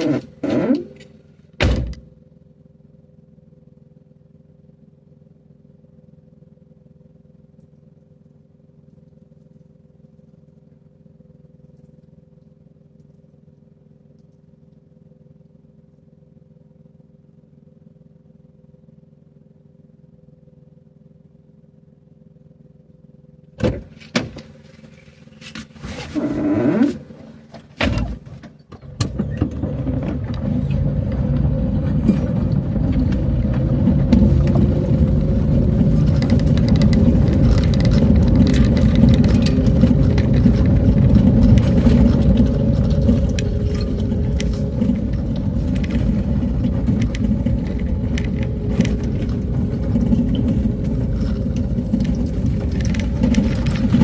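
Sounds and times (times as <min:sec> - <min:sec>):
faint steady hum: 0:00.0 - 0:54.0
vehicle engine running: 0:00.0 - 0:54.0
short rising whine: 0:29.3 - 0:54.0.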